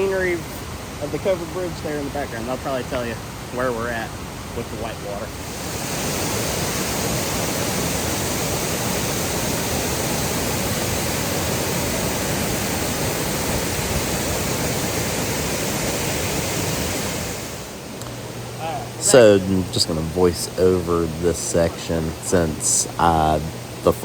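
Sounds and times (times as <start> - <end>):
waterfall rushing: 0.0 - 24.0.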